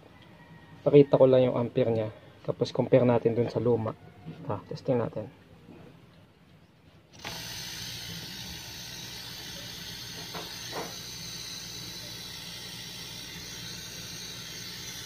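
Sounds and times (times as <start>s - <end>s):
refrigerator compressor humming: 7.0s - 15.0s.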